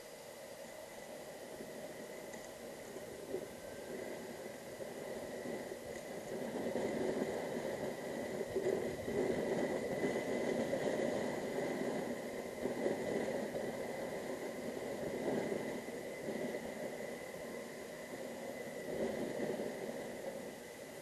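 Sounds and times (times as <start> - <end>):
wind and road noise: 0.0 - 21.0.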